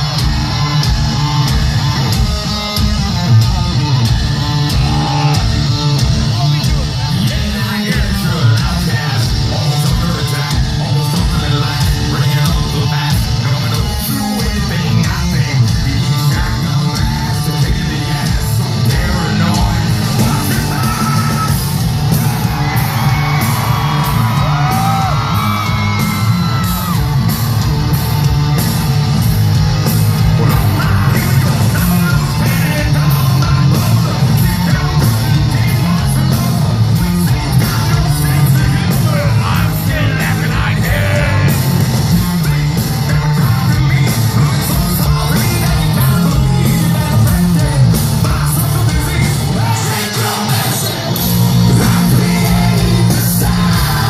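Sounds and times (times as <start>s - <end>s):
hard rock song: 0.0s - 54.0s
yelled and sung vocals: 0.0s - 54.0s.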